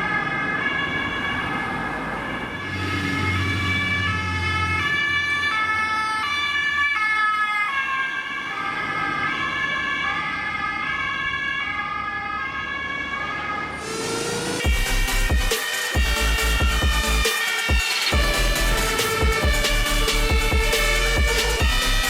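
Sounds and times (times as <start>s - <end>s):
two-tone police siren: 0.0s - 22.0s
car engine: 1.5s - 6.4s, 13.5s - 22.0s.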